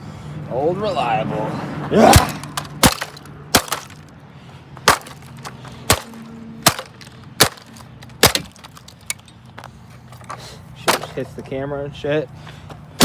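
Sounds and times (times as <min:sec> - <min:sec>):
plastic body breaking: 0:02.0 - 0:04.1, 0:04.8 - 0:09.2.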